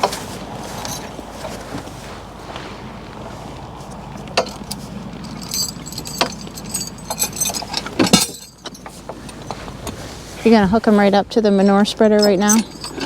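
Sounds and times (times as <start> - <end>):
low steady rumble: 0.0 - 13.0
metal chains clinking: 0.7 - 1.2, 4.3 - 10.6, 11.5 - 13.0.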